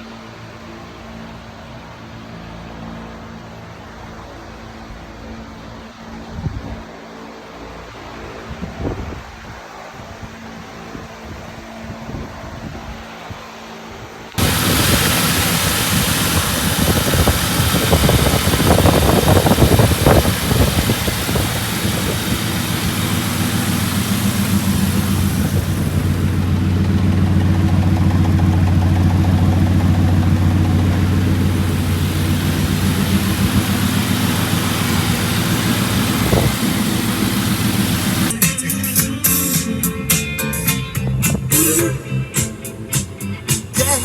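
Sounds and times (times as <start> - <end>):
car engine idling: 14.4 - 38.4.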